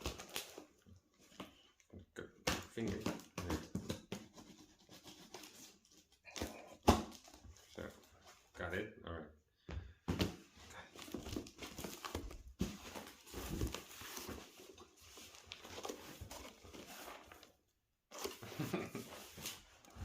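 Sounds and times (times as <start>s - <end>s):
cardboard package rustling: 0.0s - 1.7s, 10.3s - 20.0s.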